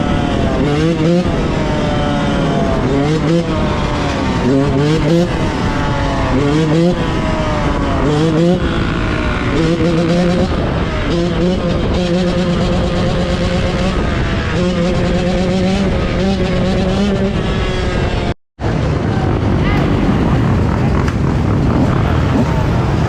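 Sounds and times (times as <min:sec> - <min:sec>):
two-stroke engine revving: 0:00.0 - 0:18.4.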